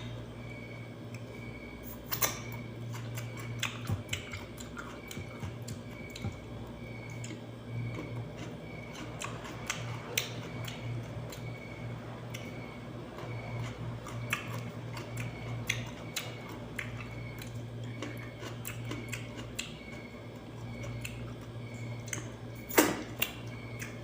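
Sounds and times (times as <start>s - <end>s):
chewing crunches: 0.0s - 24.0s.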